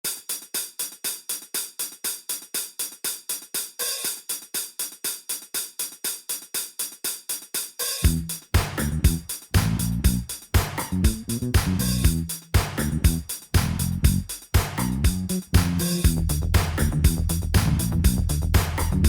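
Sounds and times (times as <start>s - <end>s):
drum machine hi-hat beat: 0.0s - 19.0s
disco backing music with bass: 8.0s - 19.0s.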